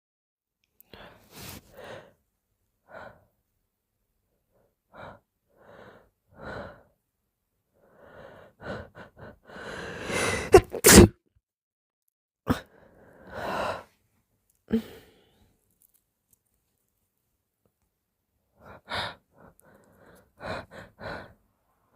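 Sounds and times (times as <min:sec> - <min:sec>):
person sneezing: 0:10.0 - 0:11.2.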